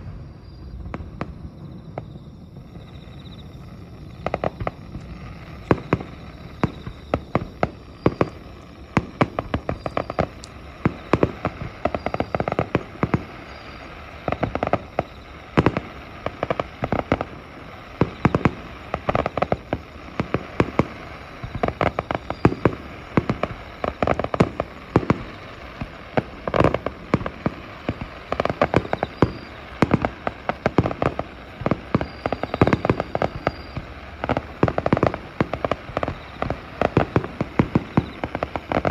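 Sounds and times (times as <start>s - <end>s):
fireworks bangs and crackling pops: 0.0s - 38.9s.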